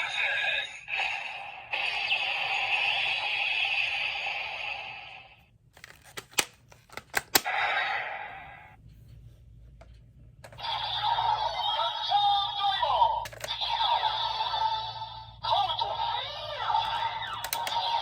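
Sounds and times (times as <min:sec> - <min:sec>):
electronic toy sound effects: 0:00.0 - 0:05.3, 0:10.5 - 0:18.0
sharp plastic clicks: 0:05.8 - 0:07.5, 0:17.3 - 0:17.9.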